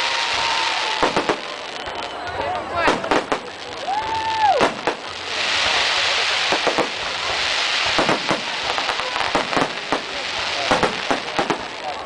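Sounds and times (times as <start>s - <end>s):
hissing crackle of sparks: 0.0s - 2.2s, 2.8s - 12.0s
firework shells bursting: 4.5s - 12.0s.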